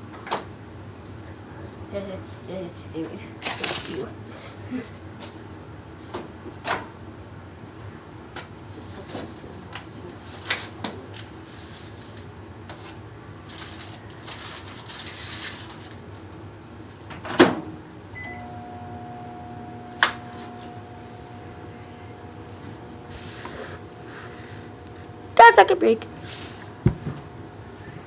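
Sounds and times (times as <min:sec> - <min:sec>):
microwave humming: 0:12.5 - 0:28.0
keypad beep: 0:18.2 - 0:18.5
microwave door shutting: 0:18.2 - 0:21.6.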